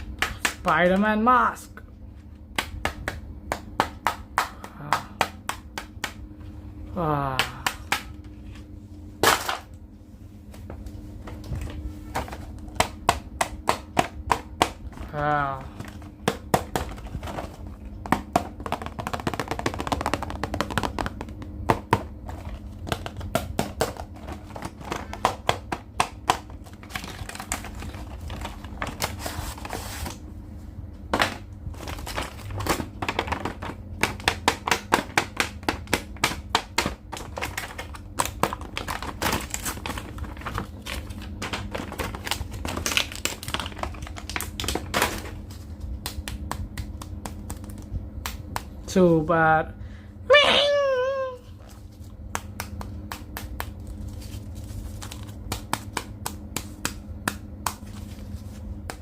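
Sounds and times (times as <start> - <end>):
packaging crinkling: 37.1 - 45.8.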